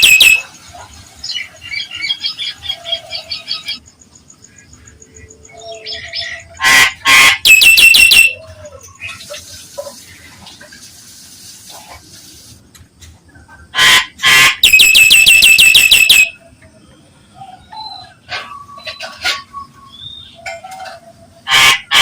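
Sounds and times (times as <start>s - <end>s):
myna harsh squawks and piercing notes: 0.0s - 0.5s, 6.6s - 8.4s, 13.8s - 16.4s, 21.5s - 22.0s.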